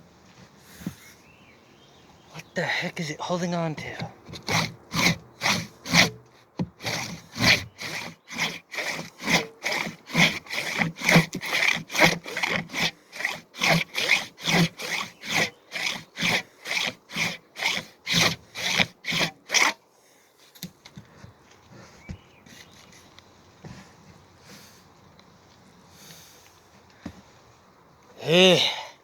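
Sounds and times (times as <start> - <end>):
handsaw cutting tree trunk: 3.8 - 19.8.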